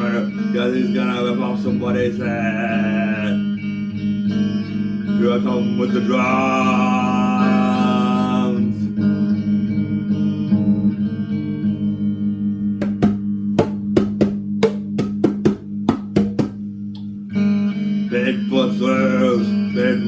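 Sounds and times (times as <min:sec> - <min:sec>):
guitar droning chord: 0:00.0 - 0:20.0
sharp percussive hits: 0:12.8 - 0:16.6.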